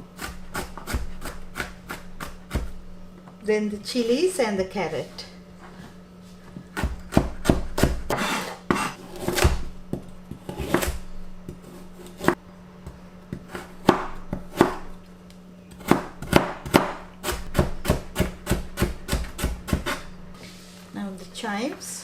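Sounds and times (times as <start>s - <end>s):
knife chopping on cutting board: 0.2s - 2.8s, 6.7s - 12.4s, 13.3s - 14.9s, 15.7s - 20.1s.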